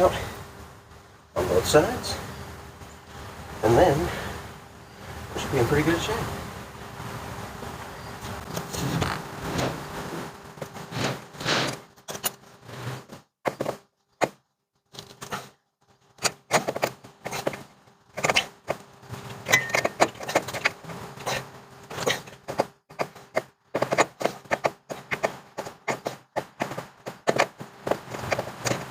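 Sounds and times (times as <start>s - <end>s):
hand tools on metal: 16.2s - 28.9s.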